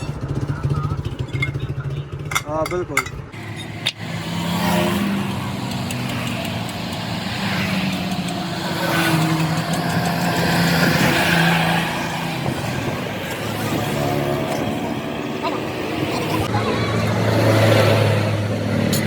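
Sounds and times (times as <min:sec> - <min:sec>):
vehicle engine running: 0:00.0 - 0:11.2
road noise: 0:00.0 - 0:19.0.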